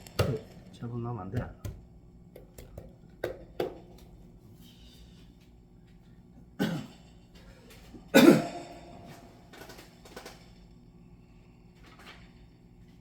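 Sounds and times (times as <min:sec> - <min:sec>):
faint steady hum: 0:00.0 - 0:13.0
person coughing: 0:06.6 - 0:07.1, 0:08.1 - 0:09.0.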